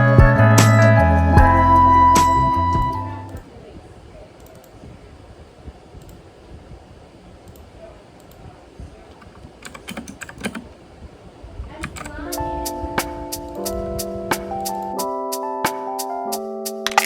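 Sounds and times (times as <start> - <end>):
music: 0.0 - 3.4, 12.3 - 17.0
computer keyboard typing: 9.2 - 10.7, 11.8 - 15.0.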